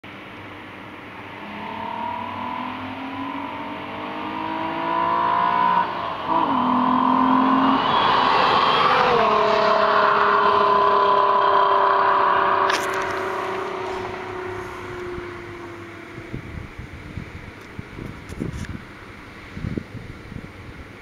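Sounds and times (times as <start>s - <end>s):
car engine accelerating: 1.2s - 17.5s.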